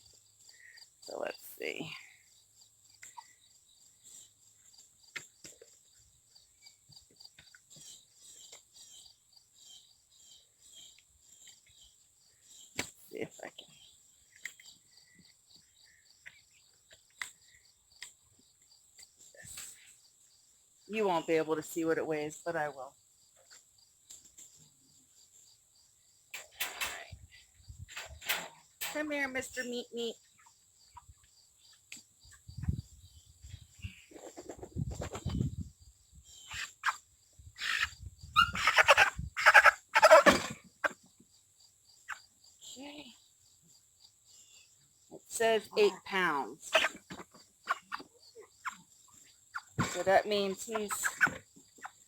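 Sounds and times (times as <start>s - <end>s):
insects chirping: 0.0s - 52.0s
chicken squawking: 36.5s - 37.0s, 37.6s - 41.0s, 46.7s - 48.0s.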